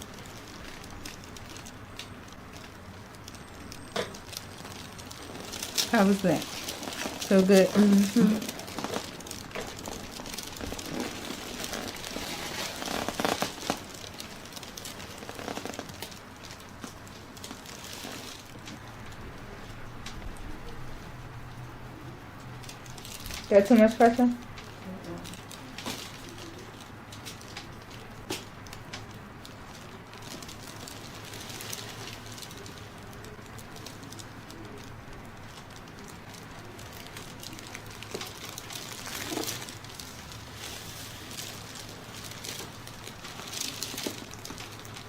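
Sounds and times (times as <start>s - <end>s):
hands rustling and crinkling: 0.0s - 45.0s
low steady hum: 0.0s - 45.0s
small crackles: 0.0s - 45.0s
hands rubbing skin and clothing: 10.6s - 14.0s.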